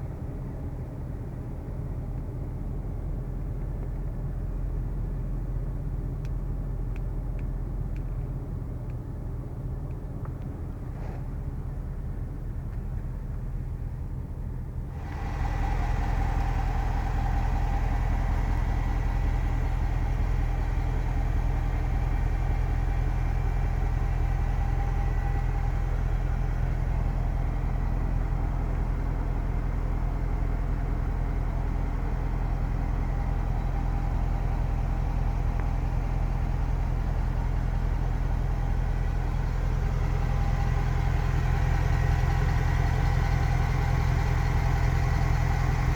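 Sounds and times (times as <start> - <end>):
car engine idling: 11.4 - 45.9.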